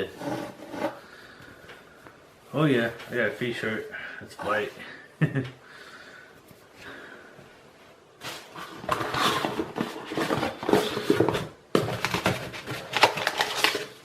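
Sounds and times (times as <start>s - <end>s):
packaging crinkling and rustling: 8.2s - 14.0s.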